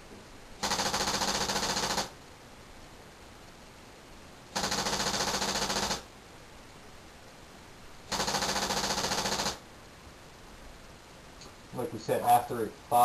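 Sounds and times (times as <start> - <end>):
paintball marker rapid shots: 0.6 - 2.1, 4.6 - 6.1, 8.1 - 9.6.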